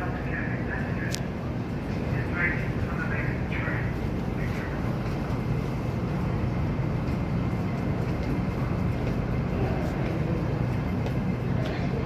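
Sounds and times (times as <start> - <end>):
electric train rumbling: 0.0 - 12.0.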